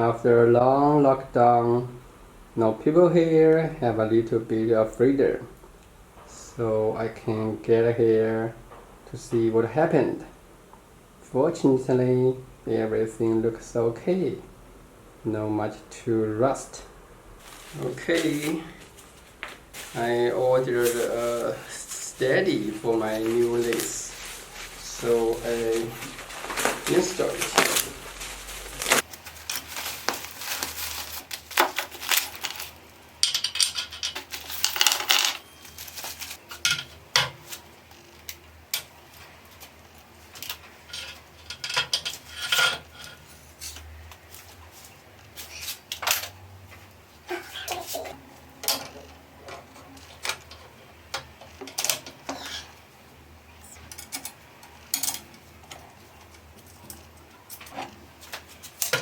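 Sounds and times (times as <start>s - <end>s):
metal parts and tools clinking: 20.6s - 37.4s, 40.3s - 43.9s, 48.6s - 52.8s, 53.6s - 58.0s.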